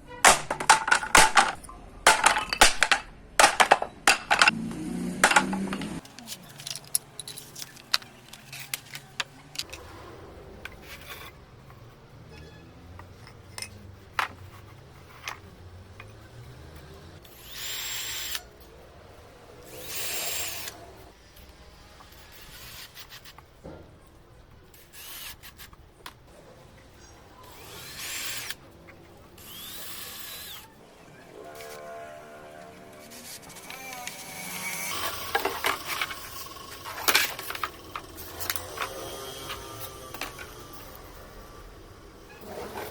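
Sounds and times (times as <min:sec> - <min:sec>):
power drill running: 0:17.3 - 0:18.4, 0:19.7 - 0:20.8, 0:27.4 - 0:28.6, 0:29.4 - 0:30.7, 0:33.1 - 0:42.9.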